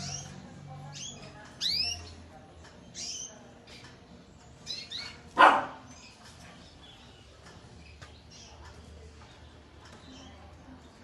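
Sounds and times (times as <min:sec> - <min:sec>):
canaries chirping: 0:00.0 - 0:11.0
dog bark: 0:05.4 - 0:05.9.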